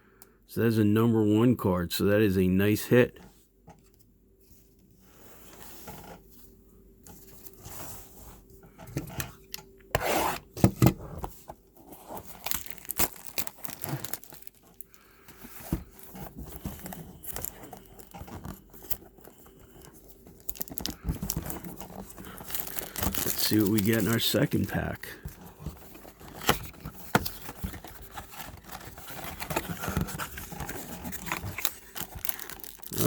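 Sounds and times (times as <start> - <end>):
foil wrapper tearing and crinkling: 12.2 - 15.0, 20.4 - 24.8, 30.6 - 33.0.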